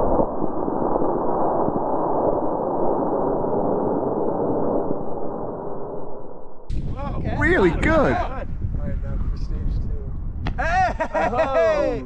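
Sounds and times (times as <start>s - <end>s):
muffled rocket rushing noise: 0.0s - 10.7s
rocket ignition burst: 6.7s - 8.1s.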